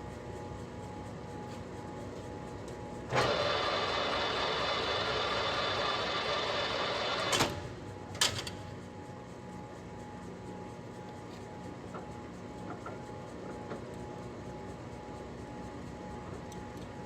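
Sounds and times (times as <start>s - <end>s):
lathe geared whir: 3.0s - 7.7s.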